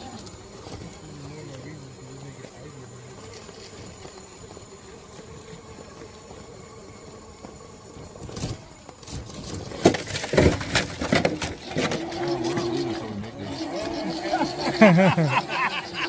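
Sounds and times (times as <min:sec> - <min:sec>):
faint motor whine: 0:00.0 - 0:09.7
scraping and knocking on rock: 0:07.4 - 0:13.0.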